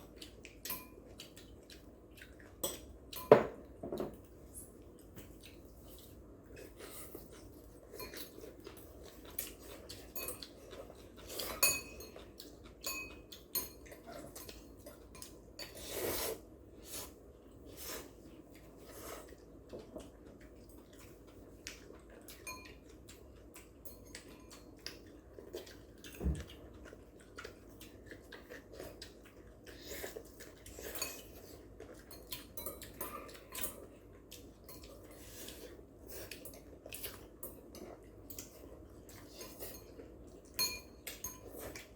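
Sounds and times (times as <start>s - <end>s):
utensils clinking on plates: 7.9s - 8.5s, 9.9s - 16.2s, 30.7s - 33.9s, 40.6s - 41.8s.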